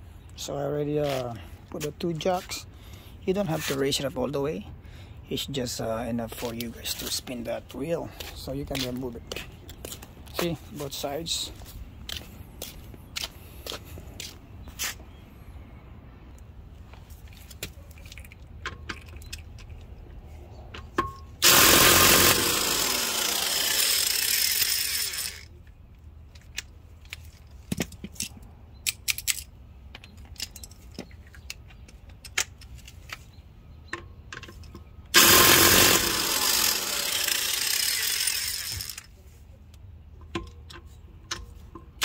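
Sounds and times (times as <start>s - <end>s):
impact wrench hammering: 21.0s - 25.4s, 35.2s - 39.0s.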